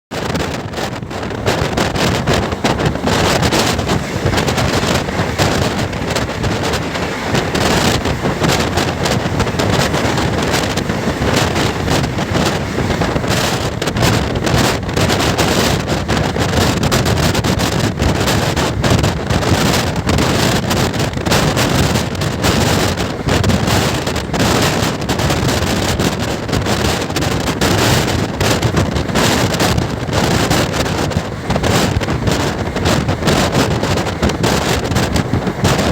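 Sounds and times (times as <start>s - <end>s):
train coaches rumbling and rattling: 0.1s - 35.9s
wind buffeting on microphone: 0.1s - 35.9s.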